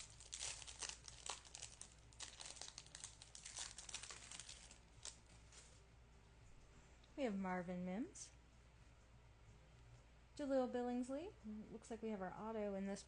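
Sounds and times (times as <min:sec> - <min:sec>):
foil wrapper crinkling and tearing: 0:00.0 - 0:05.4.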